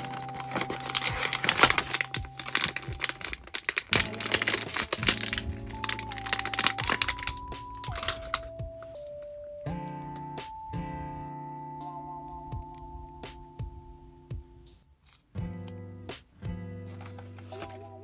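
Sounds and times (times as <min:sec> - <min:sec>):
packaging crinkling and clicking: 0:00.0 - 0:09.2, 0:16.9 - 0:18.0
slow melodic background music: 0:00.0 - 0:18.0.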